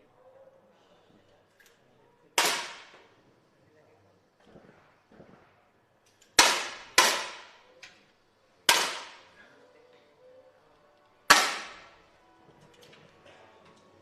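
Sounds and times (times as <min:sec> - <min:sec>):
air rifle shots: 0:02.4 - 0:03.1, 0:06.3 - 0:07.7, 0:08.6 - 0:09.4, 0:11.3 - 0:12.0.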